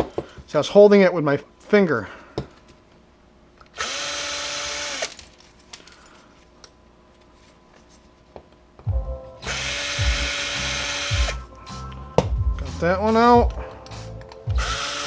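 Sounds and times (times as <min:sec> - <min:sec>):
electric drill whining: 0:03.7 - 0:05.2, 0:09.4 - 0:11.5, 0:14.5 - 0:15.0.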